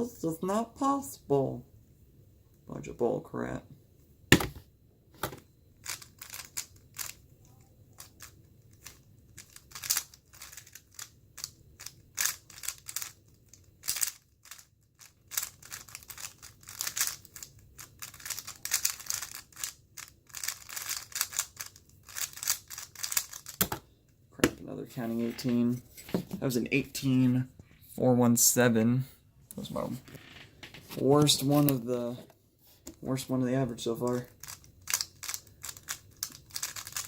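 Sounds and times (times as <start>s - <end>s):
plastic puzzle cube clicking: 8.0s - 14.6s, 15.3s - 23.7s, 34.1s - 37.0s.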